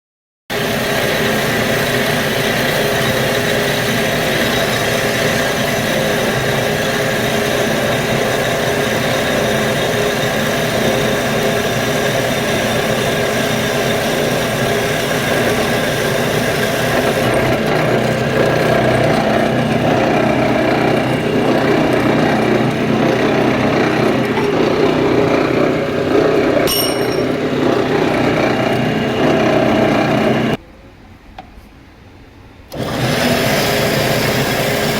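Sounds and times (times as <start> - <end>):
machine humming: 9.8 - 30.6.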